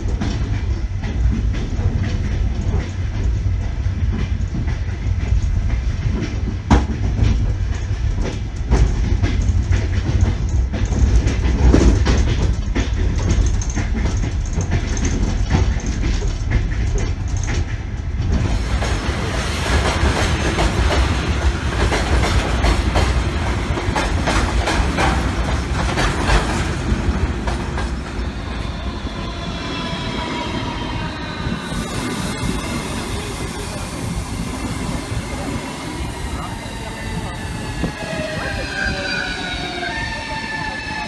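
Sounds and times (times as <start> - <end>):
rail-joint clicks: 0.0 - 41.0
train wheels rumbling on track: 0.0 - 41.0
wheels squealing on rails: 18.4 - 41.0.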